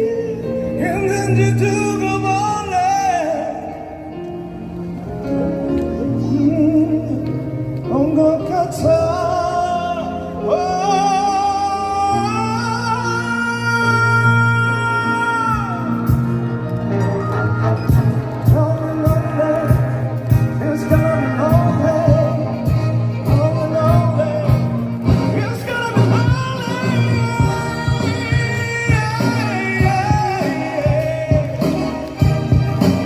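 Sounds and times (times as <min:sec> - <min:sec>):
band backing: 0:00.0 - 0:33.0
drum beats: 0:17.8 - 0:33.0
person singing long notes: 0:17.9 - 0:32.2.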